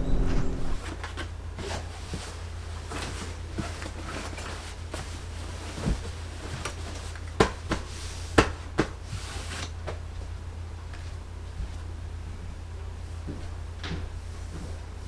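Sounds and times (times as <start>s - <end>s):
steady low hum: 0.0s - 0.9s.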